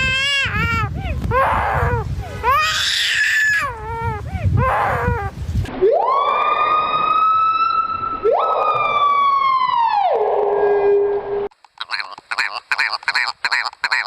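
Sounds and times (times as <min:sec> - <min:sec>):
siren-like wail: 0:05.8 - 0:11.5
hornbill calling: 0:11.7 - 0:14.0.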